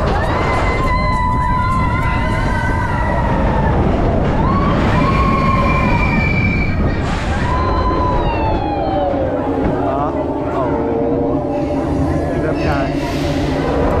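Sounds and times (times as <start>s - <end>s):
roller coaster riders screaming: 0.0s - 14.0s
roller coaster train rumble: 0.0s - 14.0s.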